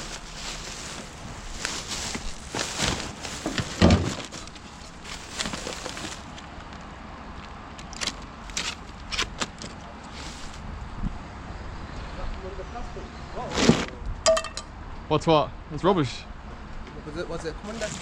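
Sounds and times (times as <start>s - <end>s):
rubbish rustling and clattering: 0.0s - 6.8s, 7.8s - 10.6s, 13.5s - 14.0s, 17.6s - 18.0s
heavy thump: 2.9s - 4.4s.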